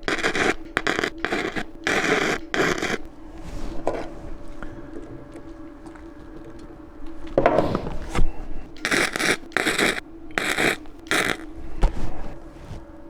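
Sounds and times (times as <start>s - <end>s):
welder crackling bursts: 0.0s - 3.2s, 8.8s - 11.6s
low hum: 0.0s - 13.0s.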